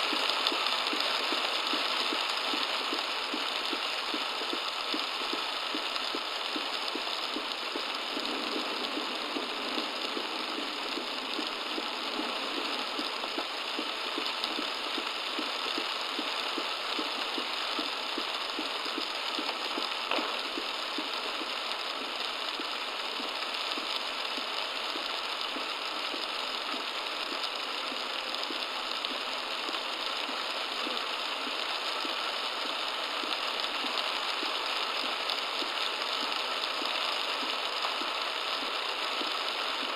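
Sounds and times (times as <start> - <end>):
heavy rain drumming on a car: 0.0 - 39.9
tyres on wet road: 19.0 - 24.2.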